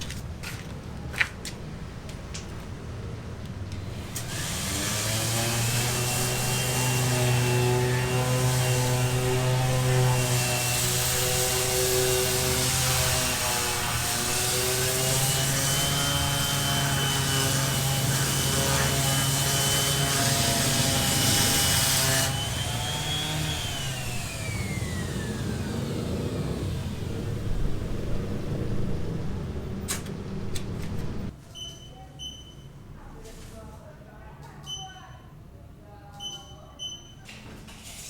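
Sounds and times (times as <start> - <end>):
power tool motor whining: 3.8 - 31.2.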